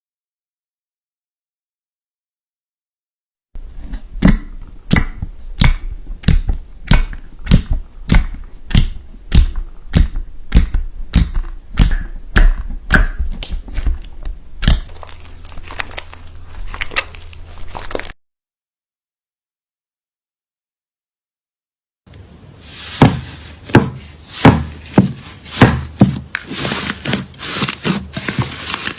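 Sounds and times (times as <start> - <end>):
slime crackling: 4.9 - 18.2.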